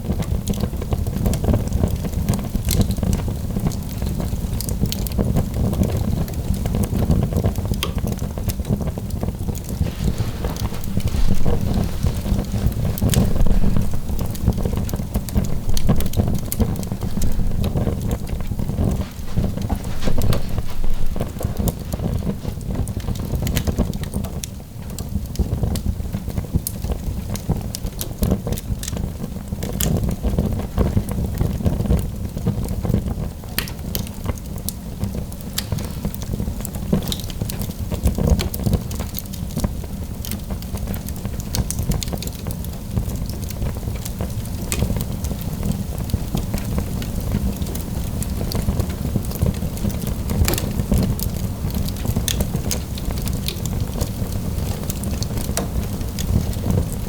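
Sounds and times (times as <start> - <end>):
wood fire crackling and popping: 0.0 - 57.0
low rumble: 9.8 - 22.3.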